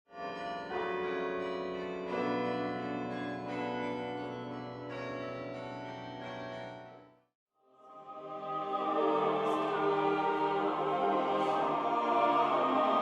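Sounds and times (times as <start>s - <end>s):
organ playing sustained chords: 8.0s - 13.0s.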